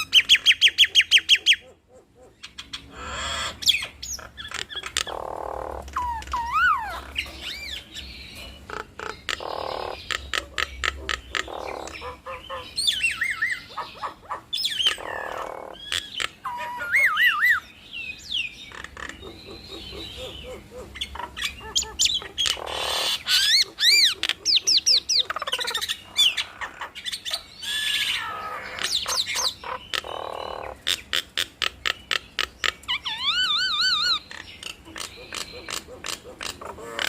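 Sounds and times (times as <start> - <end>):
harsh raspy bird calls: 0.0 - 37.0
sharp bird clicks: 34.6 - 36.7.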